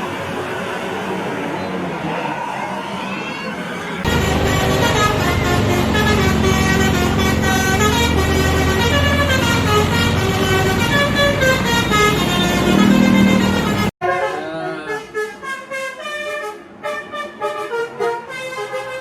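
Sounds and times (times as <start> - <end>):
bus musical horn tune: 4.0 - 19.0
steady low hum: 4.1 - 13.9.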